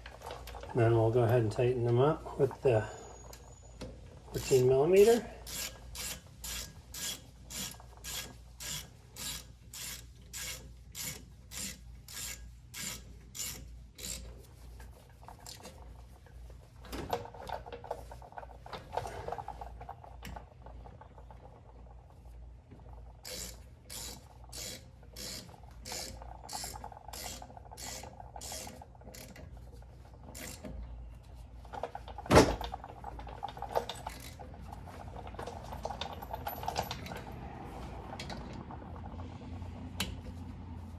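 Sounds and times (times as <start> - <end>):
ratchet wrench clicking: 4.4 - 14.2, 23.2 - 29.3.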